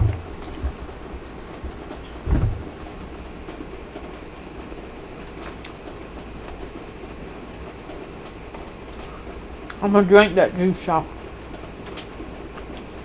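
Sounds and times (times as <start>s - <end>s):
low thump: 0.0s - 0.9s, 1.6s - 3.0s
low background hum: 0.0s - 13.0s
close chewing: 8.5s - 9.8s, 11.8s - 13.0s.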